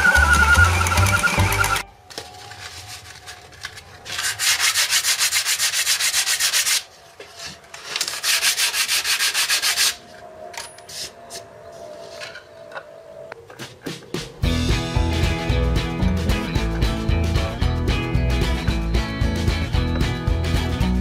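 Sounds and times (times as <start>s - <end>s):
sandpaper scraping wood: 4.1s - 7.0s, 7.8s - 10.0s.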